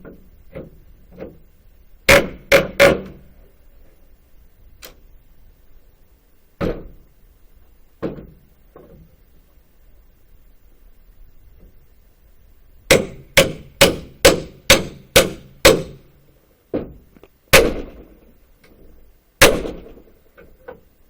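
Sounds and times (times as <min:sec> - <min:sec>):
hammer striking wooden board: 0:02.1 - 0:03.2, 0:12.9 - 0:16.0, 0:17.6 - 0:18.1, 0:19.4 - 0:20.0.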